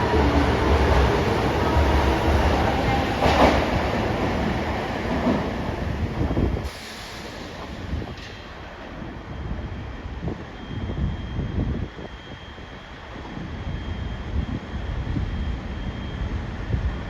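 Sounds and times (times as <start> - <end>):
subway train pulling away: 0.0 - 17.0.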